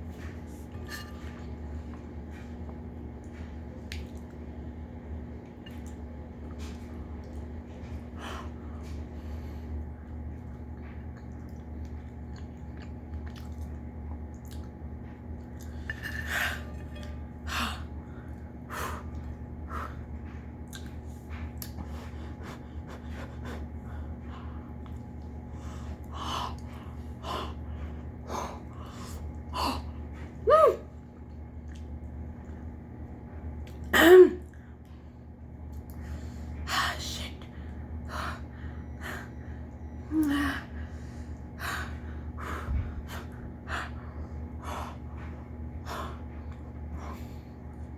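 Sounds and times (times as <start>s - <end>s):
low hum: 0.0s - 47.9s
person chewing food: 10.4s - 15.9s, 19.1s - 23.7s.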